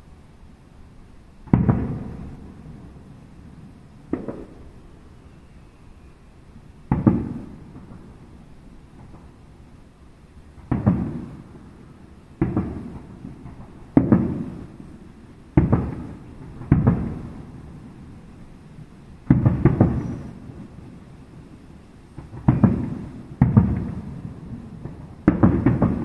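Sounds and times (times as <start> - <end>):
firework shells booming: 1.4 - 2.6, 4.1 - 4.8, 6.9 - 8.4, 10.6 - 11.7, 12.4 - 17.8, 19.2 - 20.8, 22.1 - 26.0.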